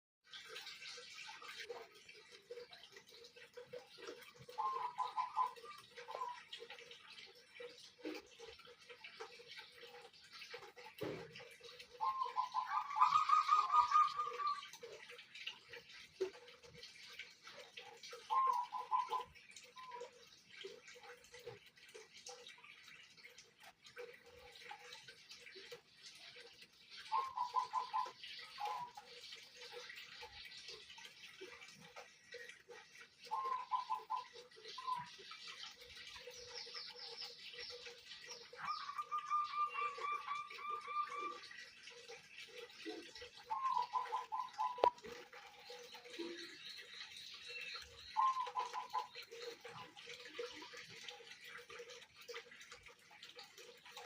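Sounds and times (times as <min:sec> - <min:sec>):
birds chirping: 0:02.2 - 0:52.0
doves cooing: 0:04.5 - 0:06.4, 0:11.4 - 0:14.8, 0:18.3 - 0:20.1, 0:27.1 - 0:29.0, 0:33.2 - 0:35.1, 0:38.5 - 0:41.6, 0:43.1 - 0:45.2, 0:48.2 - 0:50.5.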